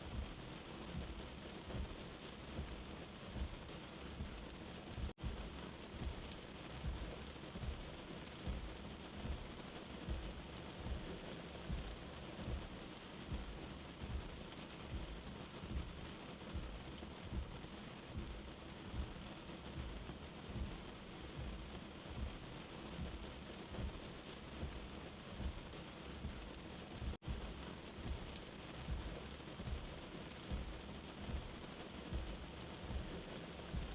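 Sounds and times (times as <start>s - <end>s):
rain falling: 0.0s - 33.9s
soft low thuds: 11.7s - 33.9s.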